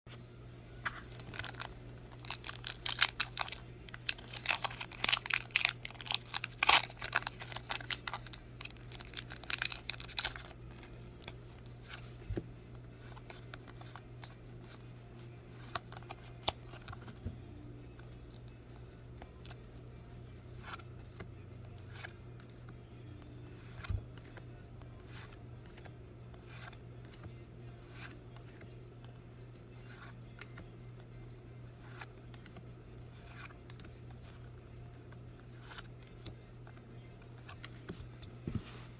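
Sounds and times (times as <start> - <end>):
foil pack tearing and crinkling: 1.2 - 10.5.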